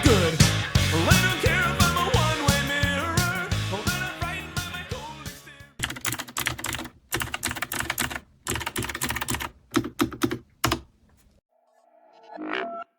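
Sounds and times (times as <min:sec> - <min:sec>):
mechanical keyboard typing: 0:05.8 - 0:11.0.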